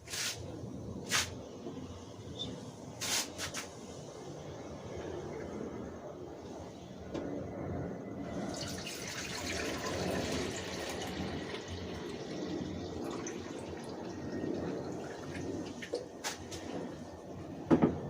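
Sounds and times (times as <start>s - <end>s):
water pouring into container: 8.3s - 16.8s.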